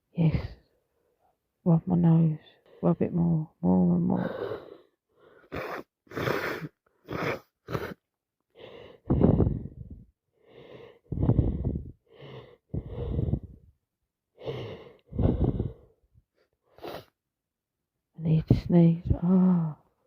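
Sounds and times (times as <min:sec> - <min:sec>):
woman breathing through stuffed nose: 0:04.2 - 0:13.7, 0:14.3 - 0:16.0, 0:16.7 - 0:17.2.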